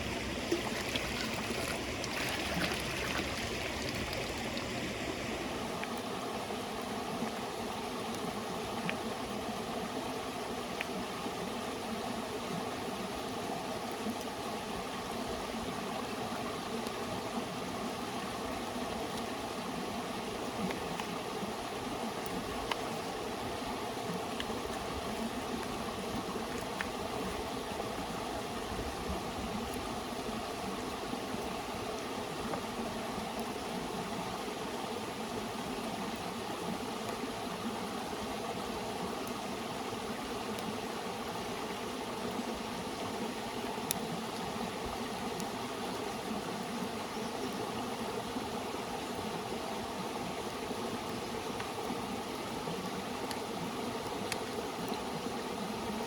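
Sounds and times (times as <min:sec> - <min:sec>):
river water rushing: 0:00.0 - 0:08.7
faint sharp clicks: 0:54.1 - 0:55.0.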